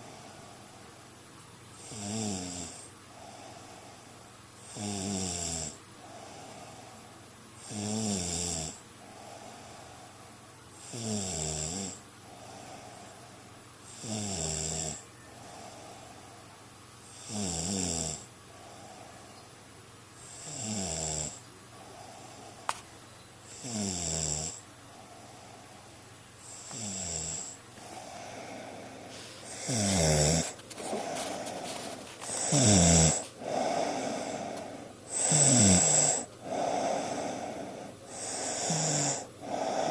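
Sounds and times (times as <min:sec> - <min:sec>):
person snoring: 0:01.8 - 0:03.7, 0:04.6 - 0:06.8, 0:07.6 - 0:09.9, 0:13.9 - 0:16.1, 0:17.1 - 0:19.1, 0:20.2 - 0:21.4, 0:23.5 - 0:24.6, 0:26.4 - 0:39.9
soft breathing: 0:03.1 - 0:04.4, 0:15.3 - 0:16.7, 0:18.5 - 0:19.5, 0:21.7 - 0:22.9, 0:24.9 - 0:26.7, 0:27.4 - 0:39.9.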